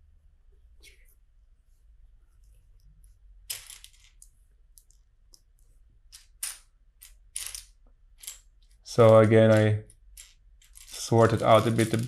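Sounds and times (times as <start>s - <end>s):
plastic bricks clicking and clattering: 6.2s - 12.0s.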